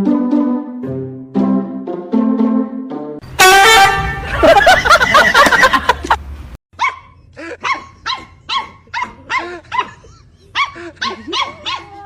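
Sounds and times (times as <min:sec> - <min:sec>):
dog barking in high yaps: 0:06.8 - 0:12.0.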